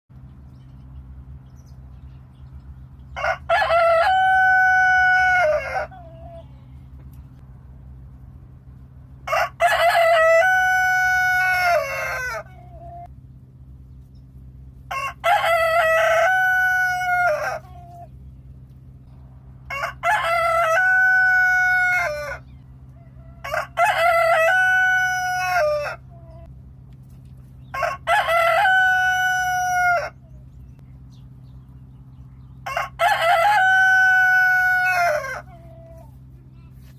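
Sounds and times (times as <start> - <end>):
steady low hum: 0.1 - 36.9
rooster crowing: 3.2 - 6.8, 9.2 - 13.1, 14.9 - 18.1, 19.6 - 26.5, 27.7 - 30.4, 32.6 - 36.1.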